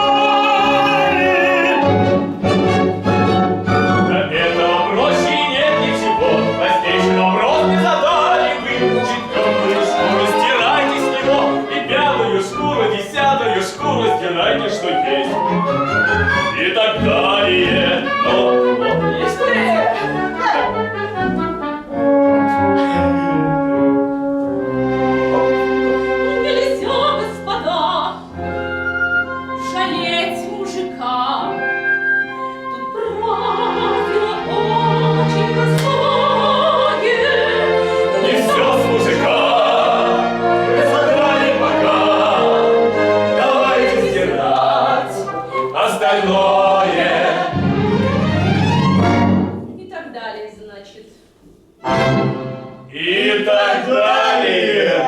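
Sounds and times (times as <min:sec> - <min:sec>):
singing voices: 0:00.0 - 0:02.3, 0:03.7 - 0:20.9, 0:32.6 - 0:47.8, 0:52.9 - 0:55.0
symphony orchestra playing: 0:00.0 - 0:49.8, 0:51.8 - 0:55.0.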